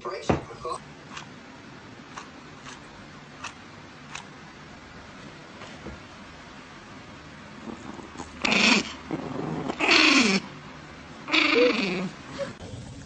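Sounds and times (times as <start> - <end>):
dog making rough calls: 7.6 - 10.6, 11.3 - 12.2.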